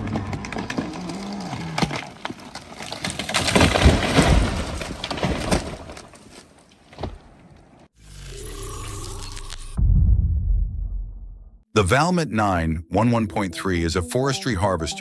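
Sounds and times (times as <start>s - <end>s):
tree cracking and splintering: 0.0s - 7.4s
tree creaking and groaning: 0.0s - 9.8s.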